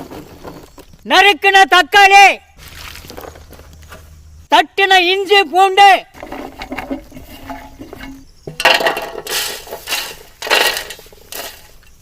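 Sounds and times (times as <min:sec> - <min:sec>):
harsh rattling and scraping: 0:00.0 - 0:00.9, 0:06.1 - 0:12.0.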